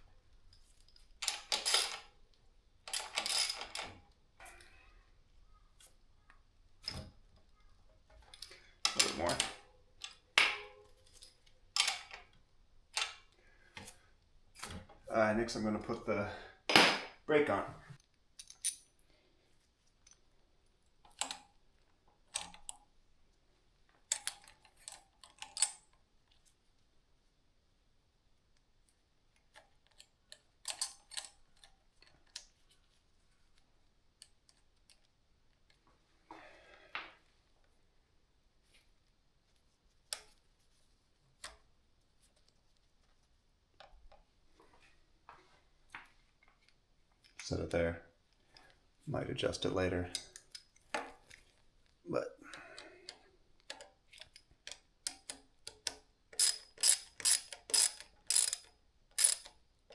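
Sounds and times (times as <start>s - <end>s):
small metal parts clicking: 0.5s - 2.1s, 2.9s - 4.7s, 18.4s - 19.0s, 24.1s - 26.0s, 29.5s - 32.5s, 52.7s - 59.9s.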